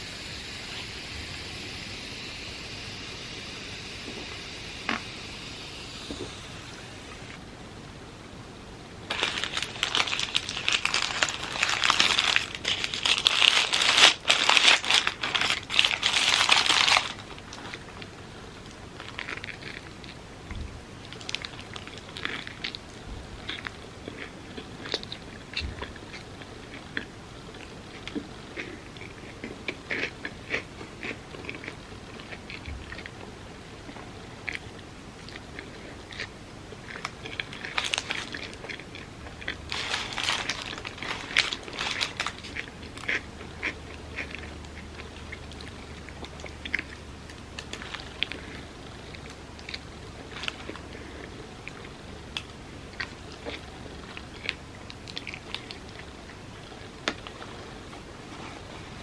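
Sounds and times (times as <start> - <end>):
crinkling and crunching: 9.1 - 33.2, 33.8 - 59.0
quiet chewing: 21.0 - 59.0.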